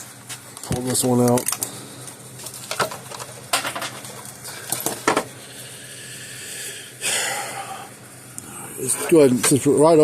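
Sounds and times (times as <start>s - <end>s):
small tools clicking and tapping: 0.5s - 1.7s.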